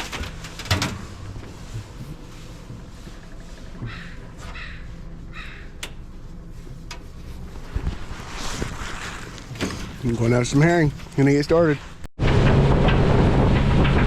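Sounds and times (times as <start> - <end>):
low steady rumble: 0.0 - 14.0
crow cawing: 3.9 - 5.7.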